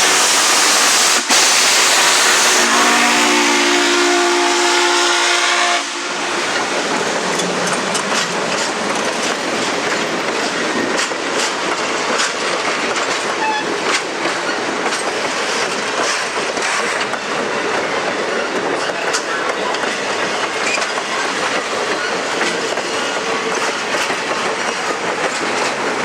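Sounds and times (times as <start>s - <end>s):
steam locomotive whistle: 0.0s - 6.4s, 13.4s - 13.7s
steam hissing: 0.0s - 26.0s
train rumbling past: 0.0s - 26.0s
wheels clicking over rail joints: 6.5s - 26.0s.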